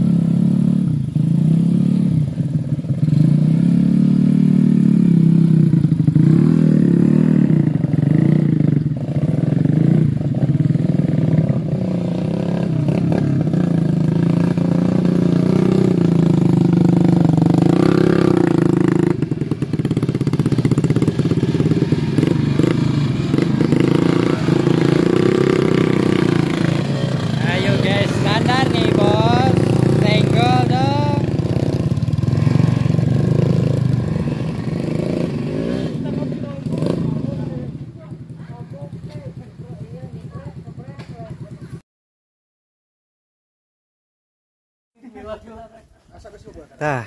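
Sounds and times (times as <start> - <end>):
motorcycle engine revving: 0.0 - 41.8.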